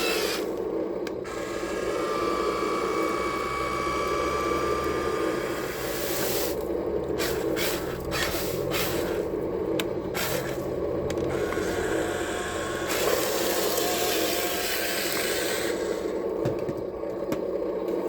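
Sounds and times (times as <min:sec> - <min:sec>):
small electric motors whining: 0:00.0 - 0:09.4, 0:10.1 - 0:16.3.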